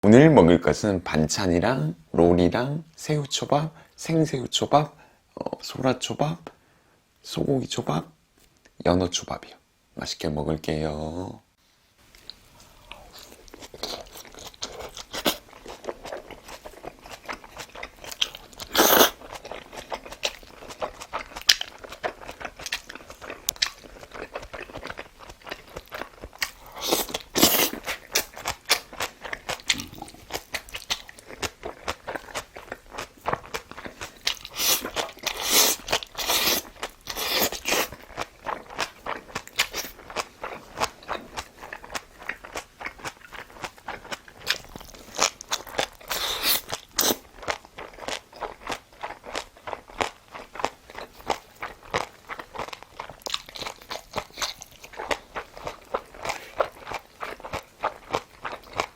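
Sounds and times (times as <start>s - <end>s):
person chewing crunchy food: 12.2s - 58.9s.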